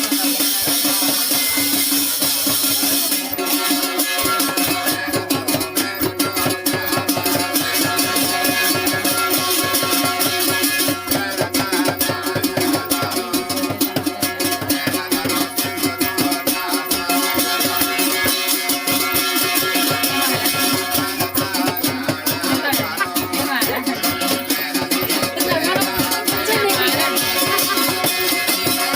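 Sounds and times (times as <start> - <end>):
fast percussion beat: 0.0 - 28.9
sustained instrumental tones: 9.9 - 28.9.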